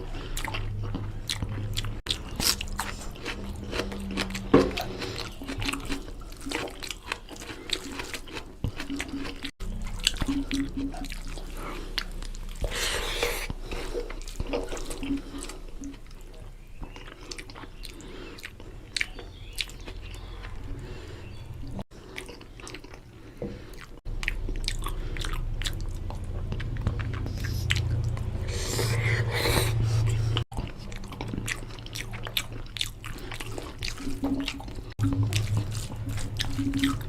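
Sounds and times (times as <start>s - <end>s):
wet slurp: 0.0s - 15.9s, 24.7s - 37.0s
wet chewing and lip-smacking: 0.0s - 37.0s.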